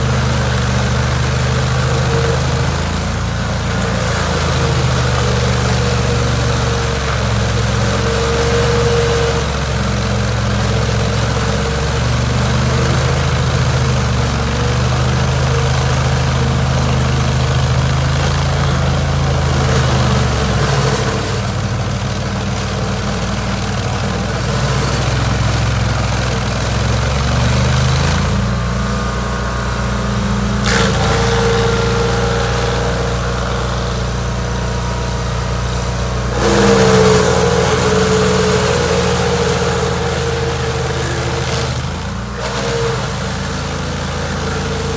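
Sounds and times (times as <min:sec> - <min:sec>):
engine running: 0:00.0 - 0:44.9
rising whining tone: 0:28.8 - 0:44.9.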